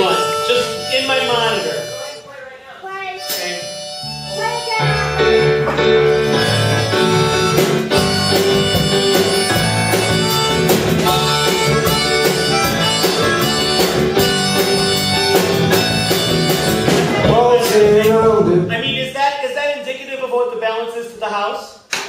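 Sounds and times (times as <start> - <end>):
harmonica holding notes: 0.0 - 19.0
piano chords: 3.8 - 19.2.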